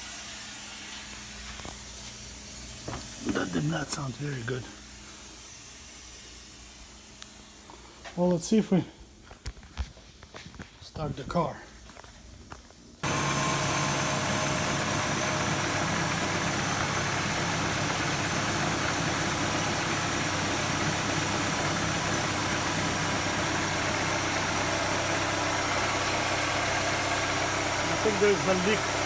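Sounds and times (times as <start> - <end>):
car engine idling: 13.0 - 29.0.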